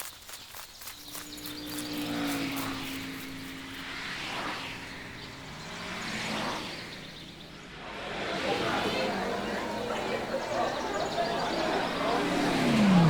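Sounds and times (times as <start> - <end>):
engine humming: 0.4 - 13.0.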